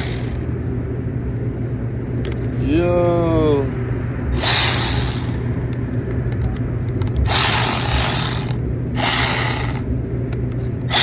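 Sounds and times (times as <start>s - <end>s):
steady low hum: 0.0s - 11.0s
ratchet wrench clicking: 4.4s - 5.5s, 7.3s - 9.8s.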